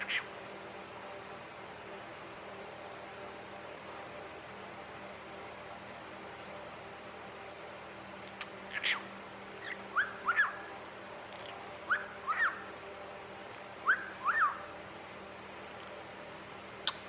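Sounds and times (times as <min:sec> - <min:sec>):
faint steady hum: 0:00.0 - 0:17.0
cockatiel whistling: 0:09.9 - 0:10.6, 0:11.9 - 0:12.6, 0:13.8 - 0:14.7.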